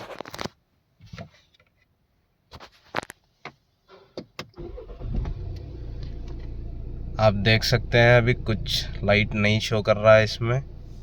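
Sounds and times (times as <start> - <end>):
sharp clicks of car controls: 3.9 - 6.6.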